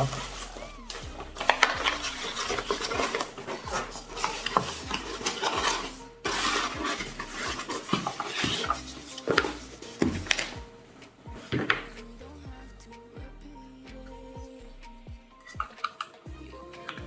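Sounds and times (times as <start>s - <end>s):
packaging rustling: 0.0s - 11.9s, 15.4s - 17.0s.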